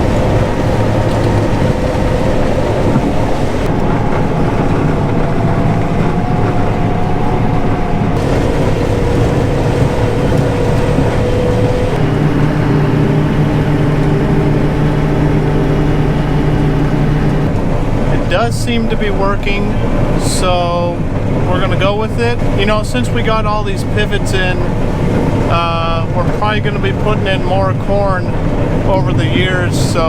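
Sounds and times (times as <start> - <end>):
combine harvester machine drone: 0.0 - 30.0.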